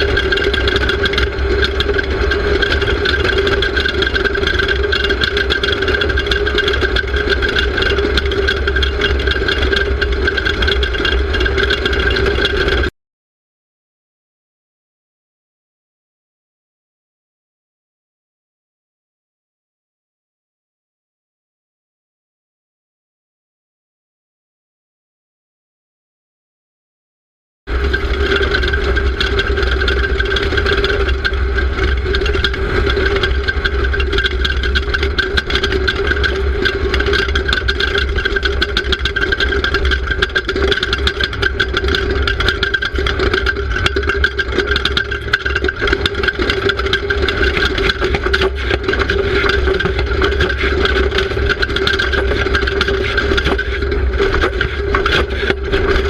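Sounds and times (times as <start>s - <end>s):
race car engine running: 0.0s - 12.9s, 27.7s - 56.0s
rattles and knocks: 0.0s - 12.9s, 27.7s - 56.0s.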